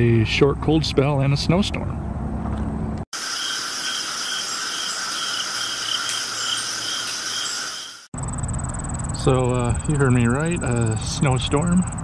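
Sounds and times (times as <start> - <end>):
insects trilling: 3.2 - 9.0
pulsing insect call: 3.2 - 9.9
low steady rumble: 8.2 - 12.0.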